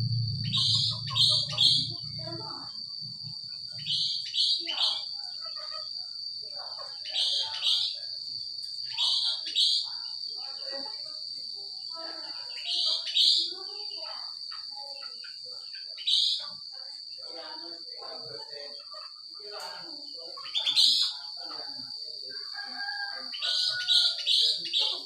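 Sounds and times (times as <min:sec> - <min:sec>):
steady high-pitched tone: 0:00.0 - 0:03.8
bird calling whistled phrases: 0:03.8 - 0:05.1.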